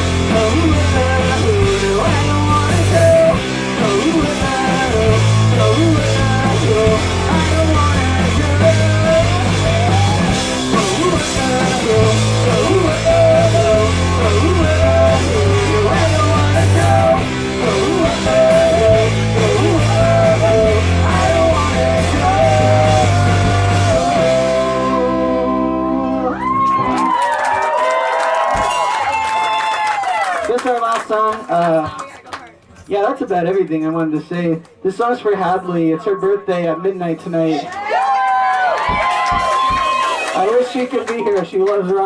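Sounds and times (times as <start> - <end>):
guitar chords ringing: 0.0 - 27.1
live rock band playing: 0.0 - 27.2
person singing: 0.0 - 27.2.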